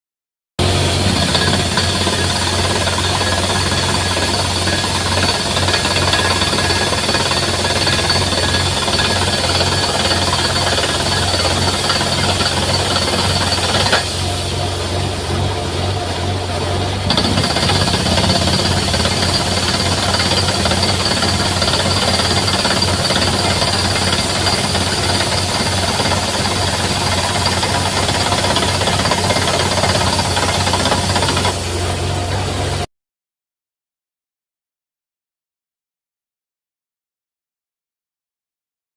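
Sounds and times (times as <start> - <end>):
drilling rig hammering: 0.6 - 15.9, 16.6 - 31.8
steady low drone: 12.8 - 26.0.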